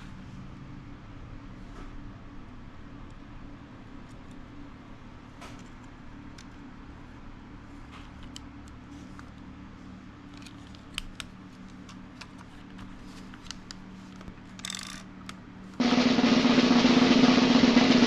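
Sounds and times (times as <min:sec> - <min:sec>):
steady low hum: 0:00.0 - 0:18.0
small sharp handling clicks: 0:08.0 - 0:09.4, 0:10.2 - 0:15.4.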